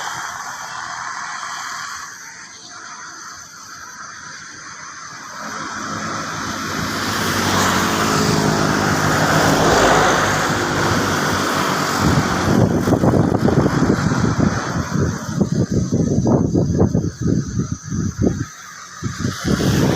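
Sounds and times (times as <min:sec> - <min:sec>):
motor vehicle passing by: 0:05.1 - 0:16.2.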